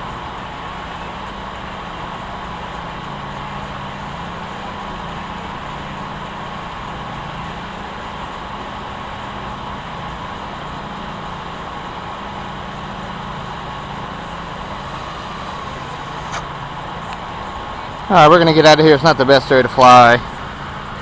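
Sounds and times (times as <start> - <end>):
vehicle engine hum: 0.0 - 21.0
high-pitched whine: 11.9 - 17.7.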